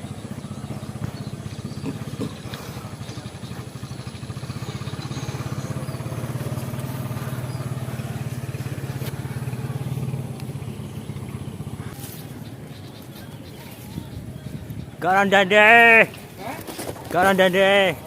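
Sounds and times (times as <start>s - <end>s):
small engine humming: 0.0s - 15.0s.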